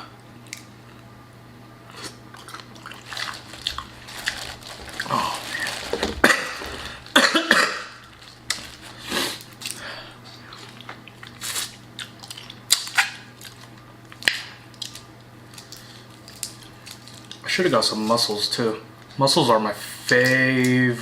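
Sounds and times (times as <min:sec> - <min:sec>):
person chewing: 0:01.8 - 0:07.2, 0:08.0 - 0:13.8.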